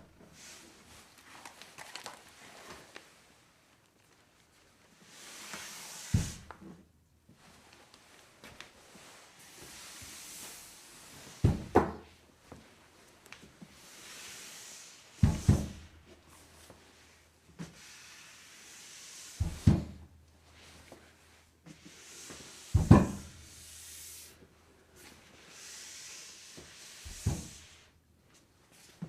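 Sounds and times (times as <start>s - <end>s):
swish of something sliding: 5.0s - 6.7s, 8.8s - 11.5s, 13.7s - 28.0s
heavy thump: 15.2s - 15.9s, 19.4s - 20.0s, 22.8s - 23.4s.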